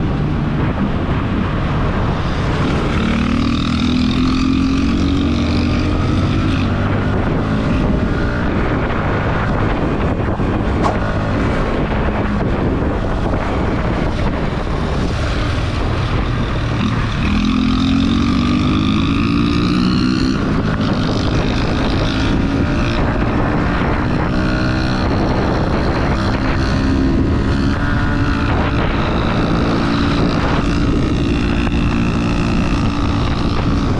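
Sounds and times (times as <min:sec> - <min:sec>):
wind rushing past microphone: 0:10.7 - 0:11.5.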